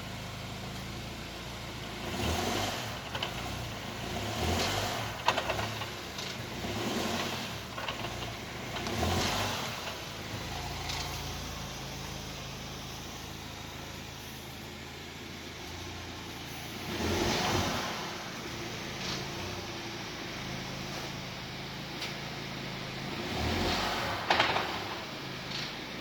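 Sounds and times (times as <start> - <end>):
steady engine hum: 0.0 - 26.0
gearbox crackling and knocking: 7.0 - 10.0.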